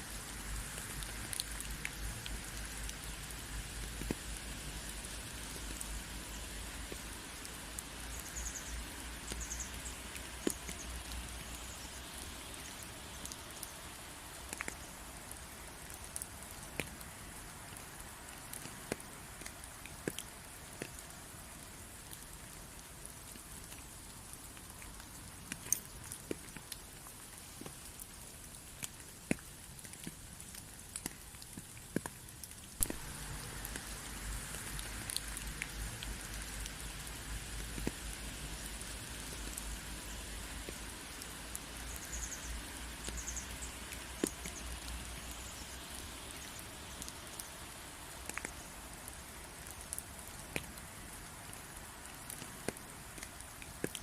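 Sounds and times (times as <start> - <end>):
rain falling: 0.0 - 54.0
raindrops ticking: 0.0 - 54.0.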